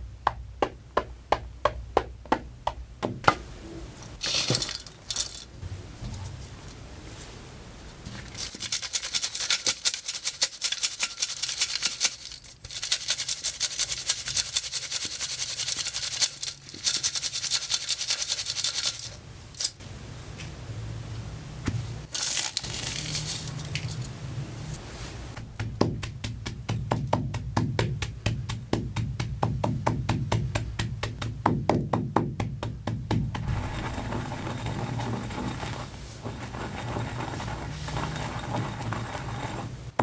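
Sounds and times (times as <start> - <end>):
chalk being crushed crunching: 4.2 - 5.6, 22.0 - 24.1, 33.4 - 39.8.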